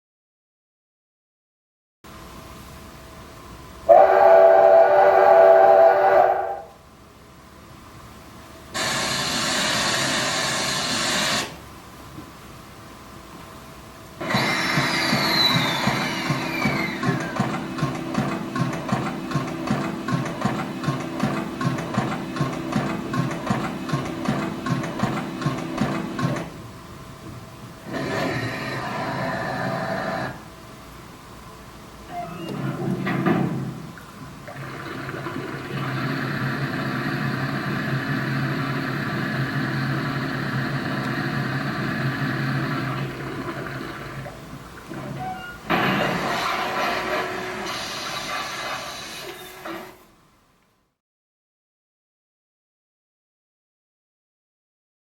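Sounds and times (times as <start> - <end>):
steady hum: 2.1 - 48.9
steam locomotive chuffs over speakers: 3.9 - 6.7, 8.7 - 11.6, 14.2 - 26.5, 27.8 - 30.4, 35.8 - 43.4
steam locomotive hiss through speaker: 3.9 - 6.7, 8.8 - 11.6, 14.2 - 17.0, 46.3 - 50.0.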